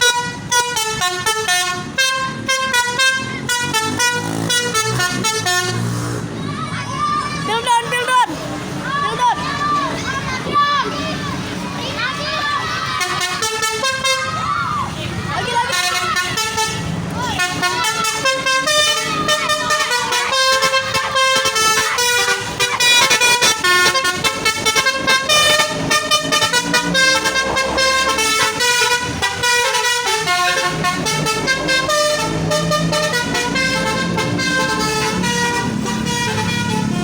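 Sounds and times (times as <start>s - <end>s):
truck air horn melody: 0.0s - 6.2s, 13.0s - 14.5s, 15.5s - 37.0s
truck engine rumbling: 0.0s - 37.0s.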